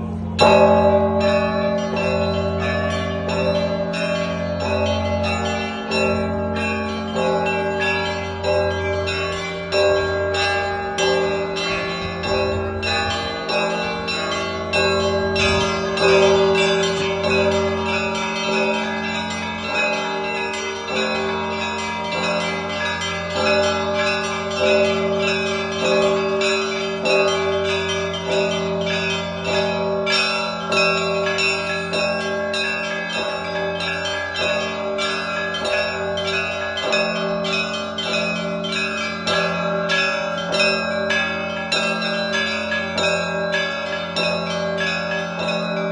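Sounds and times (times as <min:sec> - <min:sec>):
large low bell ringing: 0:00.0 - 0:45.9
small church bells rung rapidly: 0:00.0 - 0:45.9.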